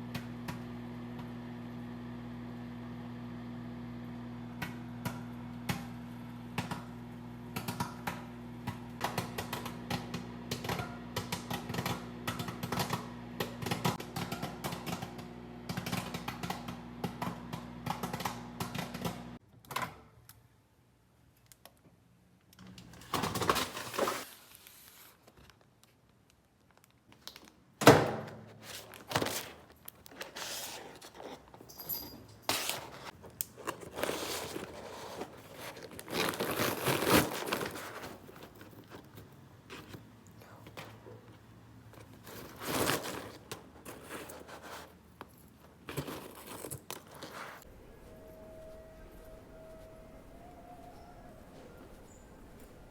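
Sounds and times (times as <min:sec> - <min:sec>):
scrapes and rustles: 0:28.5 - 0:31.7, 0:32.4 - 0:52.9
steady low hum: 0:47.6 - 0:52.9.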